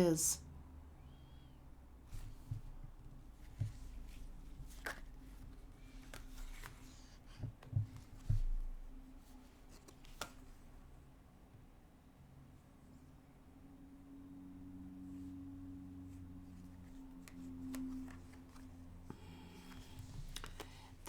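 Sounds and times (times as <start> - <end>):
cards flicking and sliding: 19.7 - 20.8.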